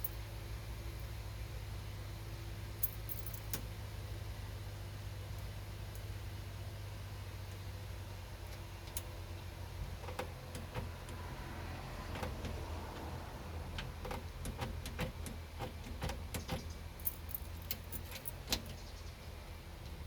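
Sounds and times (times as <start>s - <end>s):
metallic clicks and rattles: 13.7s - 18.8s.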